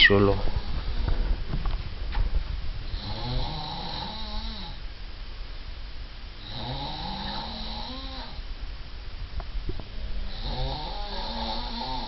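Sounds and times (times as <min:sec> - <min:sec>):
long snores: 0:02.9 - 0:04.8, 0:06.4 - 0:08.4, 0:10.2 - 0:12.0.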